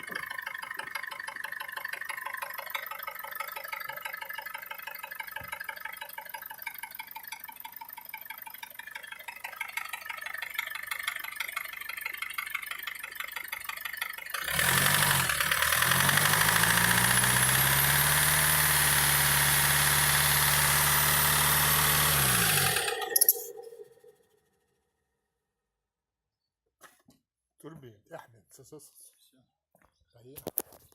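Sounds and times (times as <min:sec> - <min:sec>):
diesel engine idling: 0:00.0 - 0:24.1.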